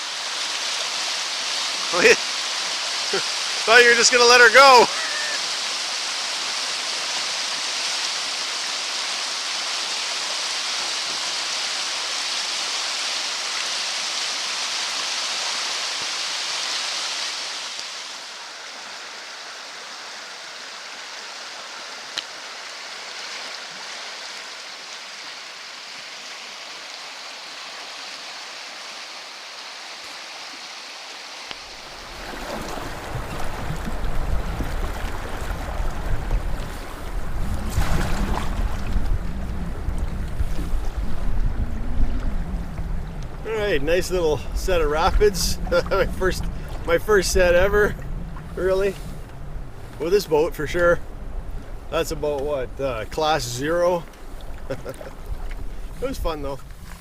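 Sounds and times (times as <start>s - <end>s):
river rapids rushing: 0.0s - 51.3s
low rumbling: 31.8s - 53.6s.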